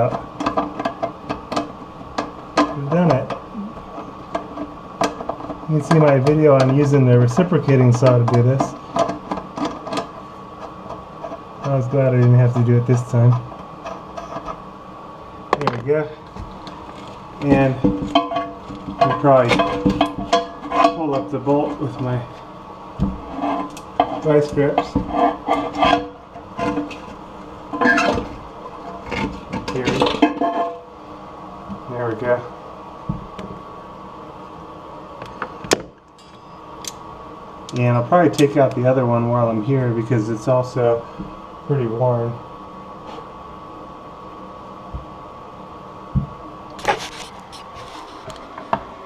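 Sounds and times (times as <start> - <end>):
steady low hum: 0.0 - 49.0
sharp clicks and scrapes: 46.7 - 48.6.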